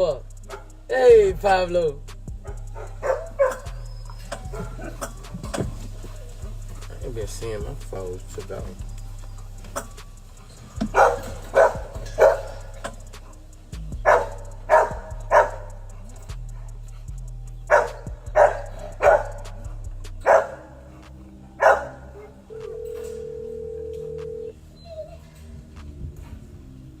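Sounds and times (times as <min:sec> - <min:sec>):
low steady hum: 0:00.0 - 0:27.0
dog barking: 0:00.4 - 0:00.8, 0:02.4 - 0:07.4, 0:09.5 - 0:23.2.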